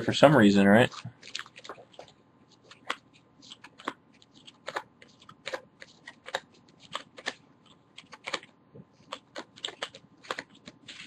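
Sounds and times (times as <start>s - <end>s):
trading cards clicking and snapping: 2.7s - 11.0s.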